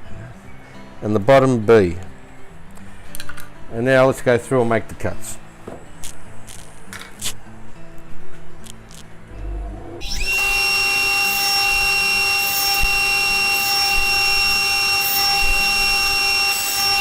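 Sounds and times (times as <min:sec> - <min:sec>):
table saw whining: 0:09.4 - 0:17.0.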